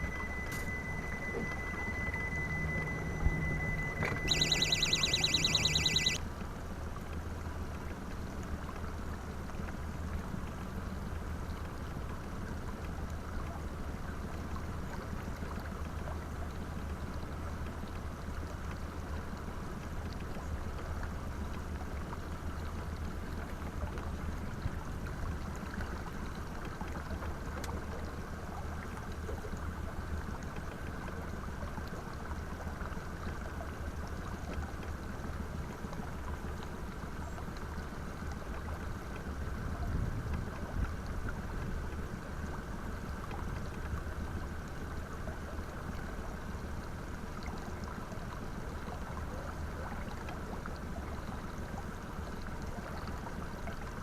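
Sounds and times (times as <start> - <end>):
water noise: 0.0 - 6.2.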